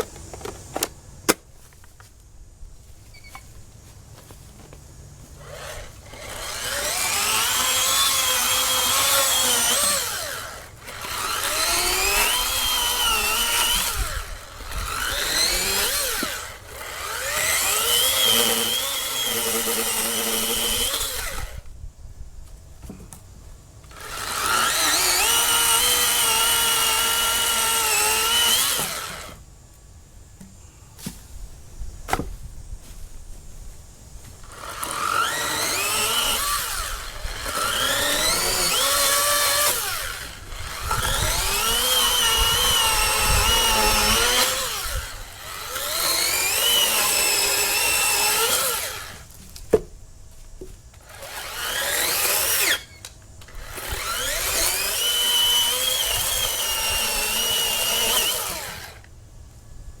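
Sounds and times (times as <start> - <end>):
electric chainsaw cutting wood: 5.4 - 21.7, 23.8 - 29.4, 34.4 - 49.4, 51.0 - 59.1.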